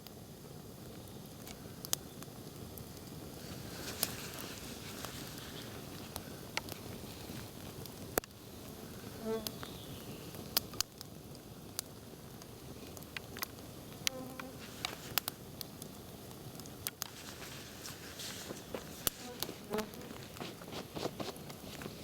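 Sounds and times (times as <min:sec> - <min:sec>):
campfire crackling and popping: 0:00.0 - 0:22.0
flying insect buzzing: 0:09.2 - 0:09.6, 0:14.0 - 0:14.9, 0:17.8 - 0:21.4.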